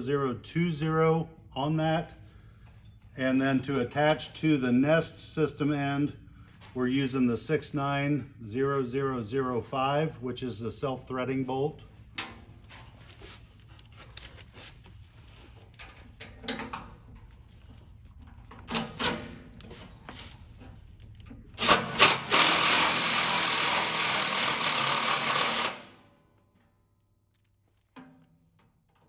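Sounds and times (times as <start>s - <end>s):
parts clicking and knocking: 15.7s - 19.7s, 20.6s - 25.9s
power drill driving bolt: 21.6s - 26.0s.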